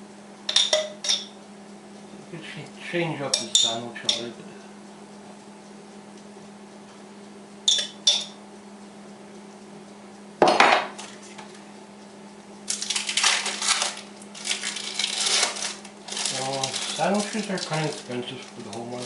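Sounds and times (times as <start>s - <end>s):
steady low hum: 0.0s - 19.0s
dishes clinking: 0.5s - 1.4s, 3.3s - 4.3s, 7.7s - 8.4s.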